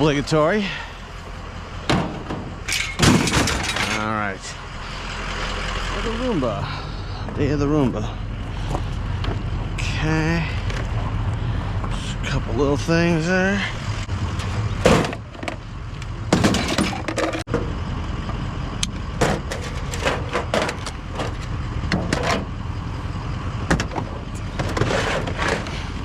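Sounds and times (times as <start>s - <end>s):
low engine rumble: 0.0s - 26.0s
scrap items knocking and clattering: 1.9s - 4.1s, 14.8s - 15.6s, 16.3s - 17.6s, 19.2s - 22.4s, 23.7s - 25.9s.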